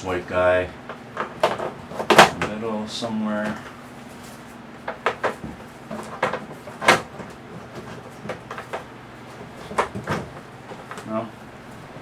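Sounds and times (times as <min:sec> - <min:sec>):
plastic trays clacking together: 0:01.2 - 0:02.6.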